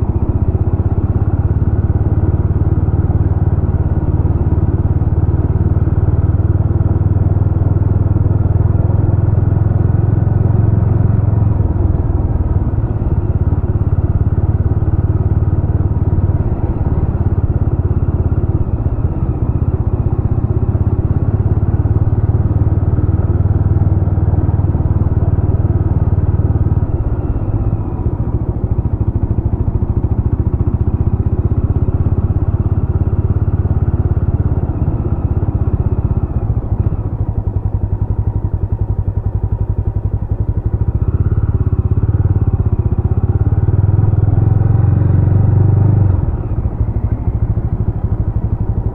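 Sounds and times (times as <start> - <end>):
motorcycle engine running: 0.0 - 48.9.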